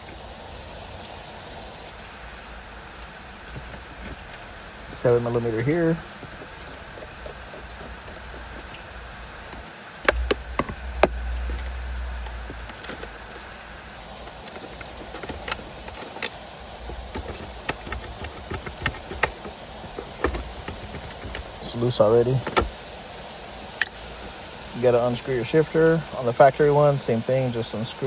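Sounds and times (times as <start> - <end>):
hand tools clicking on plastic trim: 3.5 - 21.6, 22.4 - 22.8
loud knocks: 5.0 - 16.0.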